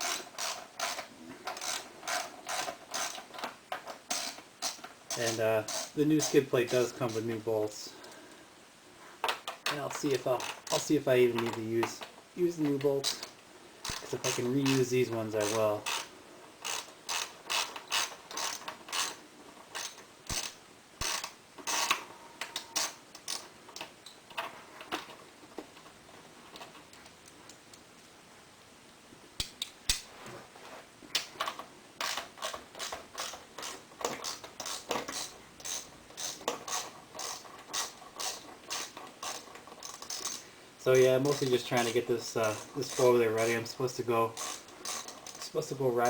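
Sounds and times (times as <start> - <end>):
ratchet wrench clicking: 0.0 - 1.0, 15.4 - 19.2, 19.8 - 22.0, 32.0 - 40.4, 44.4 - 45.4.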